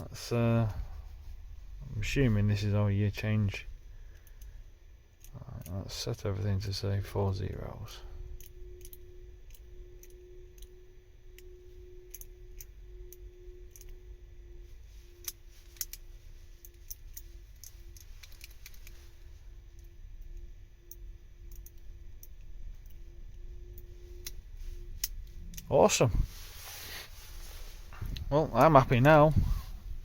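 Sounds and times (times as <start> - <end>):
faint steady hum: 0.0 - 30.0
padlock number wheels clicking: 19.8 - 23.0.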